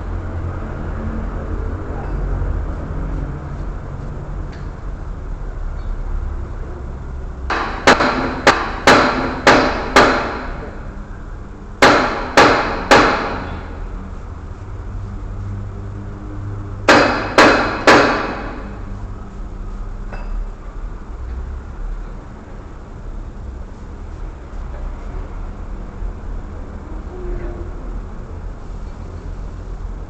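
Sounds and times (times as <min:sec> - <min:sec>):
hammer striking metal: 0:07.5 - 0:10.9, 0:11.8 - 0:13.8, 0:16.9 - 0:18.8.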